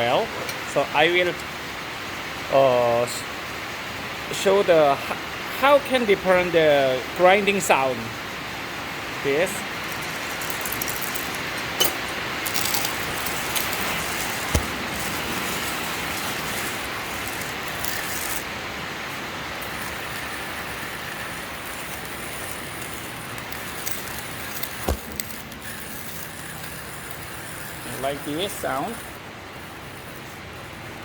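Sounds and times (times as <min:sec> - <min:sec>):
coffee grinder grinding: 0:08.9 - 0:31.0.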